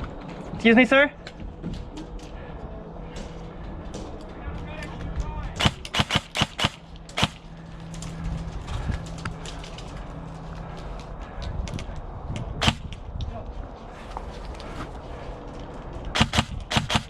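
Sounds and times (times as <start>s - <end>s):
airsoft gun shots: 5.6s - 7.4s, 12.6s - 13.0s, 16.2s - 17.0s.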